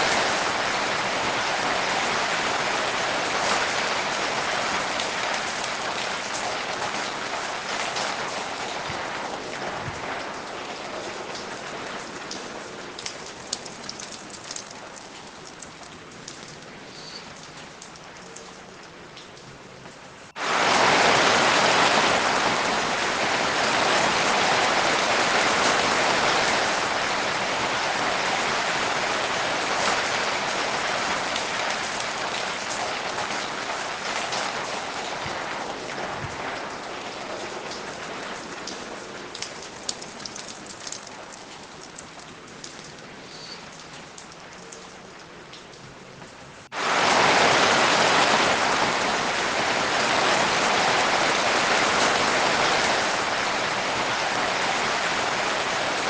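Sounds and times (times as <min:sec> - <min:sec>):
steady rain falling: 0:00.0 - 0:56.0
separate water drops: 0:12.2 - 0:20.4, 0:37.7 - 0:46.5.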